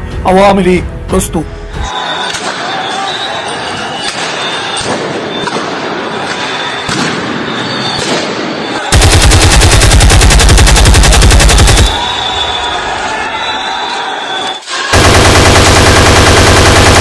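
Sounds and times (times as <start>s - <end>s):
rapid automatic gunfire: 8.9s - 12.1s, 14.9s - 17.0s.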